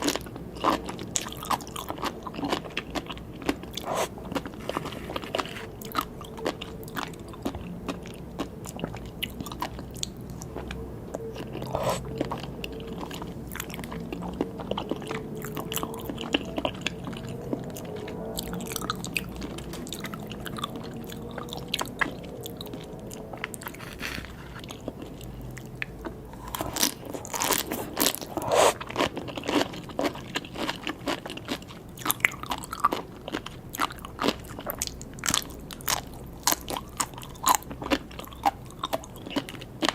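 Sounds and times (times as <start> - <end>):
crunchy bites and wet chewing: 0.0 - 6.6, 11.4 - 13.7, 23.3 - 39.9.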